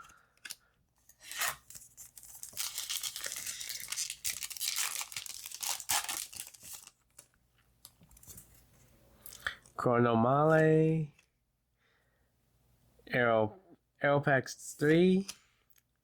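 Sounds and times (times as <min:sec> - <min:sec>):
wrapper being torn and crinkled: 0:01.2 - 0:07.3.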